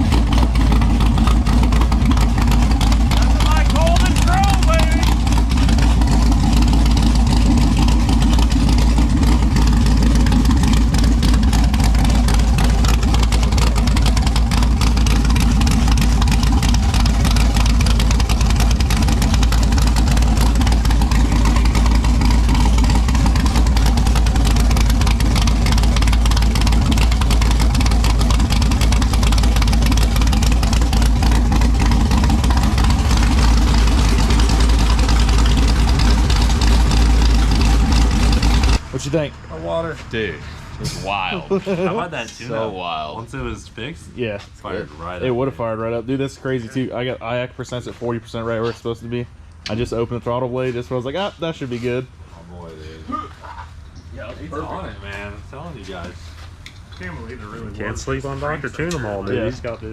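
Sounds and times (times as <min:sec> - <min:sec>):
car engine idling loud: 0:00.0 - 0:43.5.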